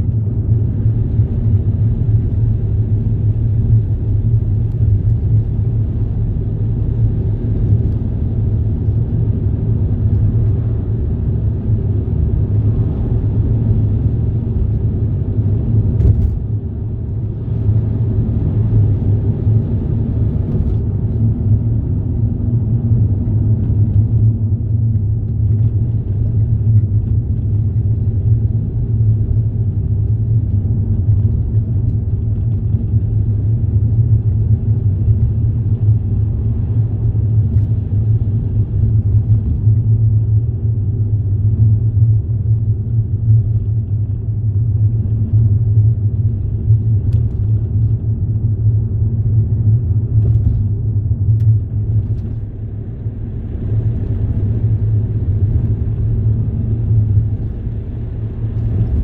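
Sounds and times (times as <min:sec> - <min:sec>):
moving vehicle rumble: 0:00.0 - 0:59.0.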